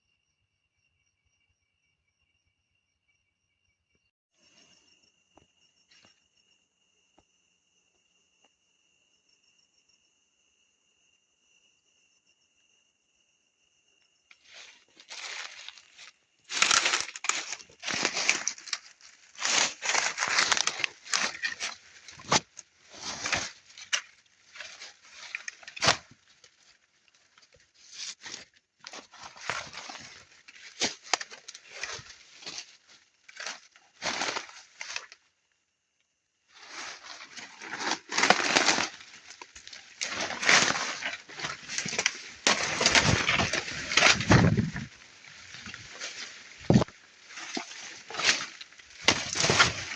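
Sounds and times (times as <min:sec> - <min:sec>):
rustling and crackling with snaps: 0:14.3 - 0:35.2, 0:36.6 - 0:49.9.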